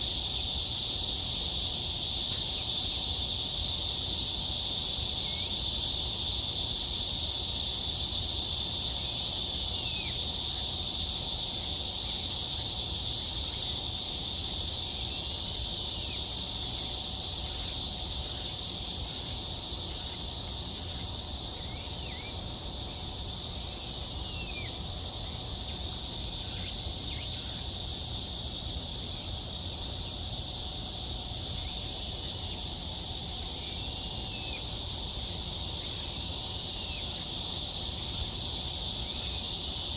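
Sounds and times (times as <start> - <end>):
insects hissing chorus: 0.0 - 39.9.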